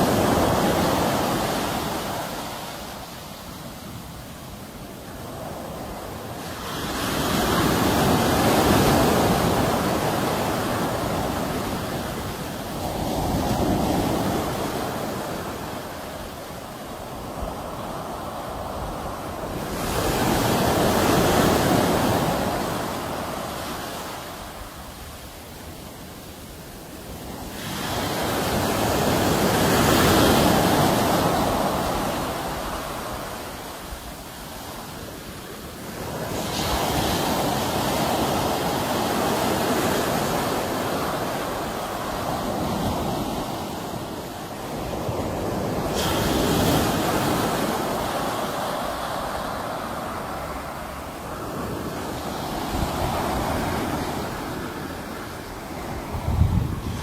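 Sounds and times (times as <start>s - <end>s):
sea waves breaking: 0.0s - 25.9s, 26.7s - 57.0s.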